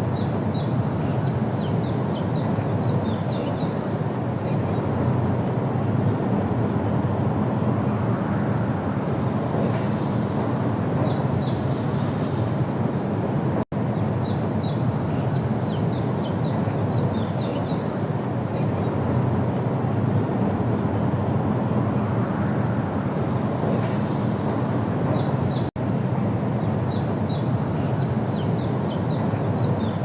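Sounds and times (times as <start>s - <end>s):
bird chirping: 0.0s - 4.9s, 9.6s - 12.6s, 14.0s - 19.0s, 26.6s - 30.0s
low rumbling background noise: 0.0s - 30.0s.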